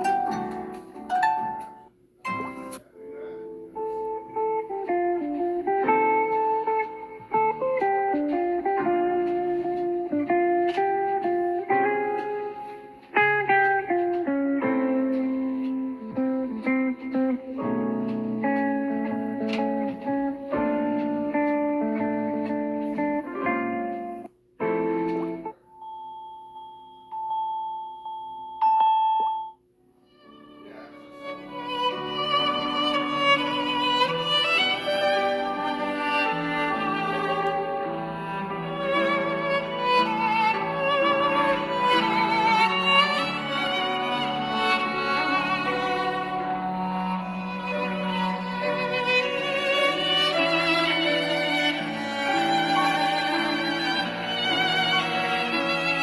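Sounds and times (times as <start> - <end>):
sharp plucked notes: 0.0 - 2.9
bowed string music: 0.0 - 3.4, 30.1 - 56.0
plucked guitar melody: 0.0 - 25.5, 30.9 - 56.0.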